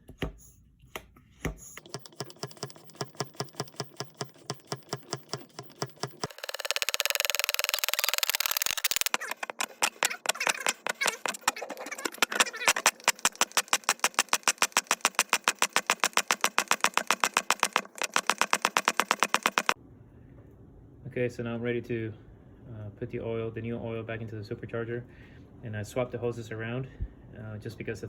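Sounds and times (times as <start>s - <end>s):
hand pump clicking: 1.8s - 19.8s.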